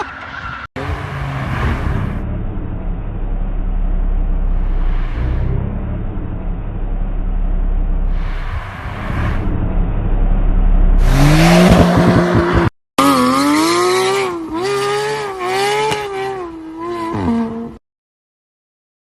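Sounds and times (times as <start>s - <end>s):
sports car engine revving: 10.9s - 17.6s.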